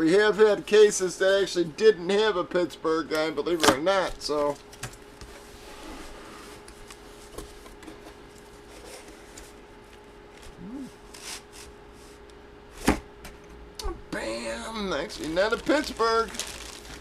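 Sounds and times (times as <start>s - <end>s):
faint steady hum: 0.0s - 17.0s
packaging rubbing and scraping: 15.1s - 17.0s.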